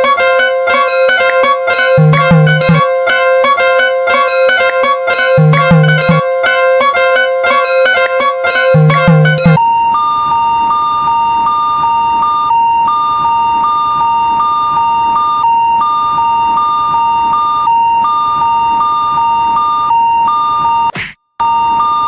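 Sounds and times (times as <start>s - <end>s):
railroad crossing two-tone alarm: 0.0s - 22.0s.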